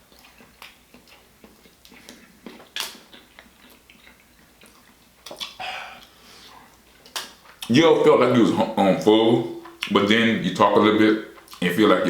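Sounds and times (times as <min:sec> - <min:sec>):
wet mouth chewing: 0:00.0 - 0:07.7, 0:09.6 - 0:10.0, 0:11.3 - 0:11.6.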